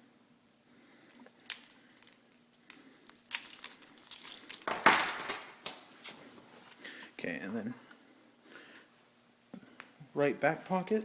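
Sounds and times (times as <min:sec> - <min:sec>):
metal keyring items clinking: 0:01.2 - 0:05.6.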